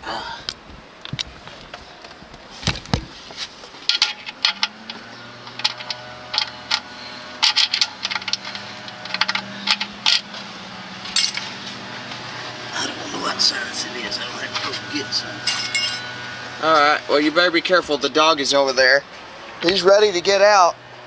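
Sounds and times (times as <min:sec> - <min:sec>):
low steady hum: 0:00.0 - 0:19.6
metal tools clinking: 0:03.7 - 0:16.9.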